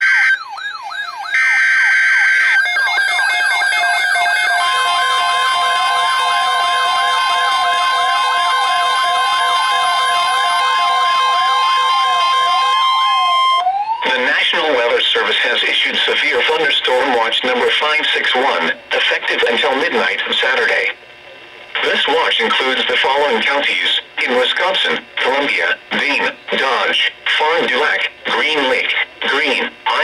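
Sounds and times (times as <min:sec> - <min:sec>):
wailing sirens: 0:00.0 - 0:14.8.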